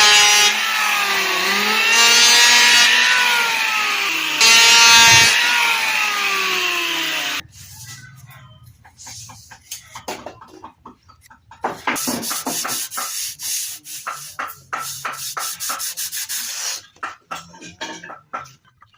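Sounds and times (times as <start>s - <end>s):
hand sanding wood: 11.9s - 17.0s.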